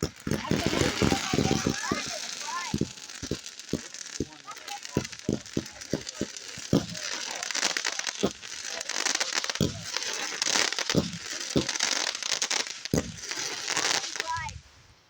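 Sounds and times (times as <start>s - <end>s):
fireworks sharp pops: 0.0s - 14.7s
fireworks crackling: 0.0s - 15.0s.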